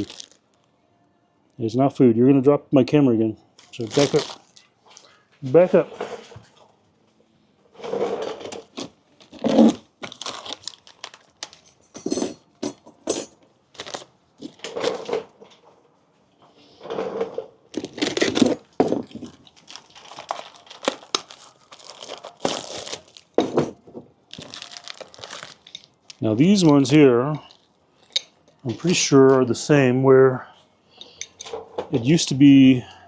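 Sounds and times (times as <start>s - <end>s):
plastic packaging crinkling: 0.0s - 0.7s, 3.6s - 5.7s, 8.2s - 11.9s, 13.7s - 15.1s, 17.8s - 29.4s.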